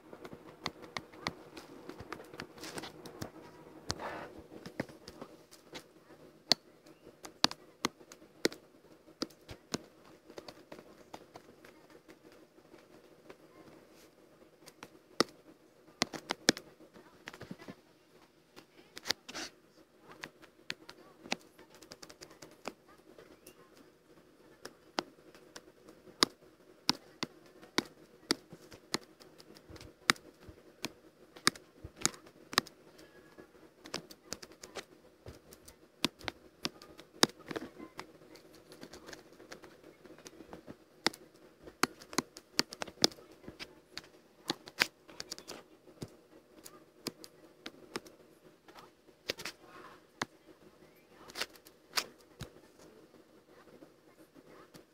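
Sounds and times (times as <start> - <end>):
steady low hum: 0.0 - 54.9
computer clicks and taps: 0.2 - 4.0, 6.4 - 8.6, 14.6 - 15.4, 16.0 - 17.6, 20.1 - 22.8, 26.2 - 48.1.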